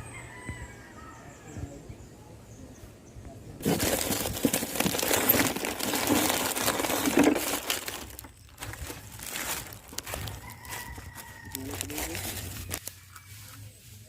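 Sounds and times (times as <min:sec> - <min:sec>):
crinkling and rustling: 0:03.6 - 0:13.6.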